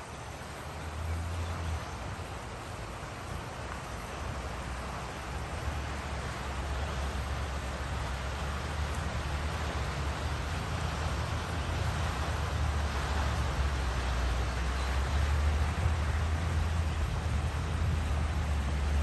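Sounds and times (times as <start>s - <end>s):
river water rushing: 0.0s - 19.0s
wind rumble on microphone: 0.0s - 19.0s.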